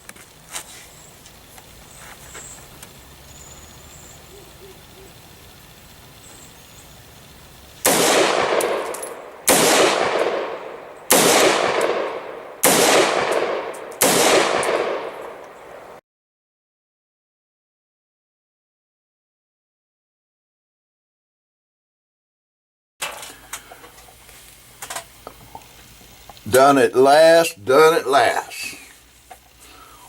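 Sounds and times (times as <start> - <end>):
gunshots with echo: 7.8 - 16.0.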